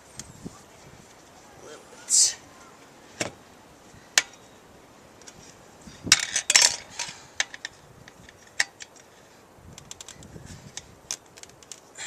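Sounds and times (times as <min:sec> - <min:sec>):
tyre irons clanking on wheel rim: 0:05.2 - 0:09.0.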